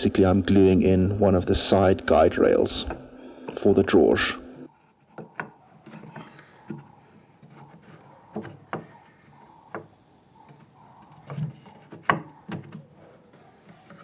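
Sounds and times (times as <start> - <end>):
faint wood rubbing: 4.7 - 14.0
light wooden knocks and clicks: 4.9 - 14.0.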